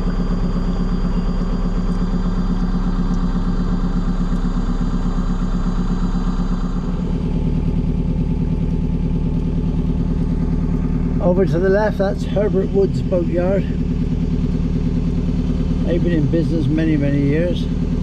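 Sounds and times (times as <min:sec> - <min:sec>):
boat diesel engine humming: 0:00.0 - 0:18.0.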